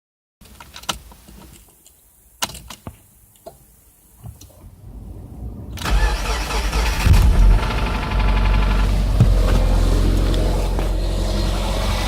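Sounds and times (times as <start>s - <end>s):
car engine starting: 4.6s - 12.0s
low rumble: 4.6s - 12.0s.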